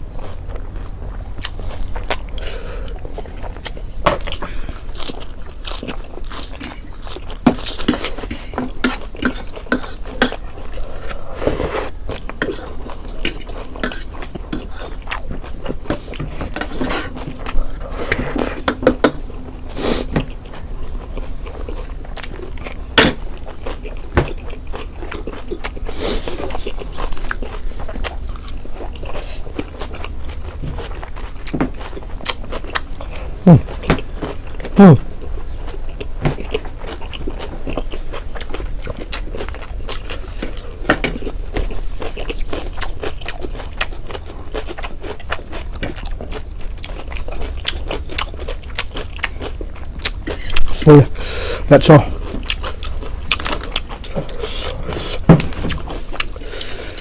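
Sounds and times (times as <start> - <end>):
chewing: 0.0 - 57.0
utensils scraping dishes: 7.8 - 12.7, 15.9 - 19.2.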